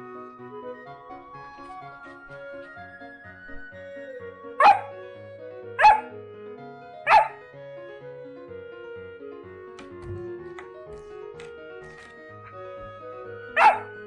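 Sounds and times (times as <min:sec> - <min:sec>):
puppy barking: 0:04.6 - 0:05.0, 0:05.8 - 0:06.2, 0:07.0 - 0:07.4, 0:13.6 - 0:14.0.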